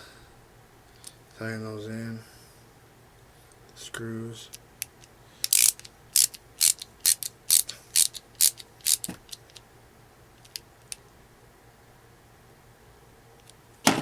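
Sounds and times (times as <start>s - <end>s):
screwdriver clicking: 4.8s - 9.6s.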